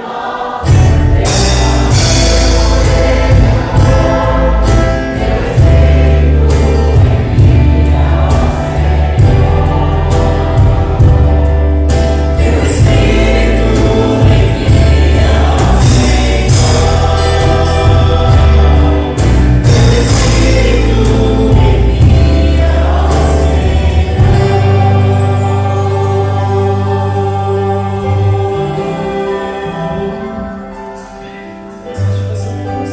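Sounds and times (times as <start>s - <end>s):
band playing: 0.0s - 32.9s
choir singing gospel song: 0.0s - 32.9s
steady drum beat: 0.6s - 26.8s
bass line: 0.7s - 29.4s.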